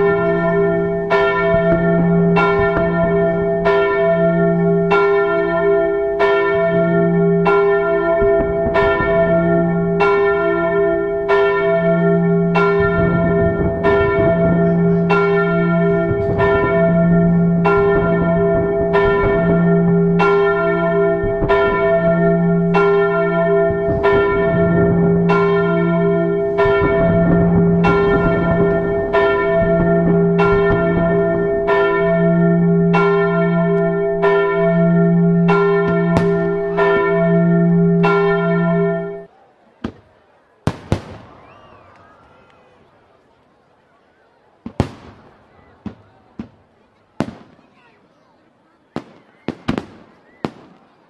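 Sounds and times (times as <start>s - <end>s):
church bells ringing: 0.0s - 39.3s.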